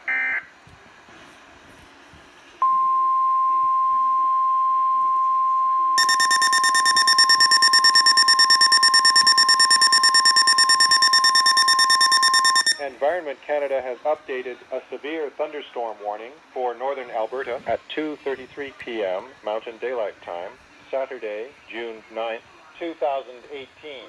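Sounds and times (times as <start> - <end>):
steady warning alarm tone: 4.8 - 13.0
rapid shrill pulsing beep: 6.0 - 12.8.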